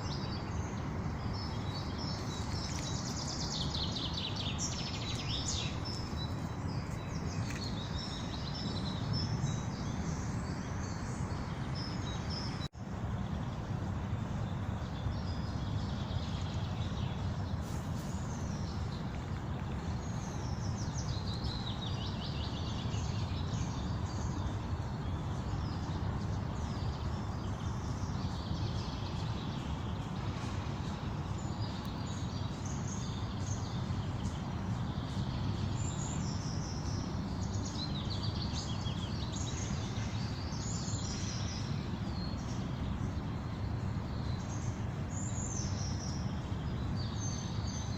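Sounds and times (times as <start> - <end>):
songbirds singing and chirping: 0.0 - 47.9.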